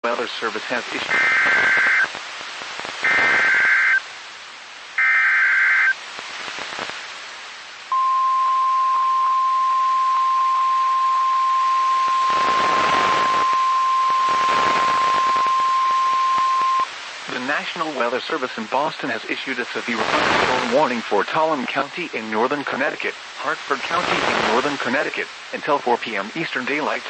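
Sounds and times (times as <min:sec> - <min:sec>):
radio static: 0:00.0 - 0:04.1, 0:05.0 - 0:07.1, 0:07.9 - 0:27.0
warbling data bursts: 0:01.1 - 0:02.1, 0:03.0 - 0:04.0, 0:09.5 - 0:16.9
steady warning alarm tone: 0:03.0 - 0:04.0, 0:07.9 - 0:16.9.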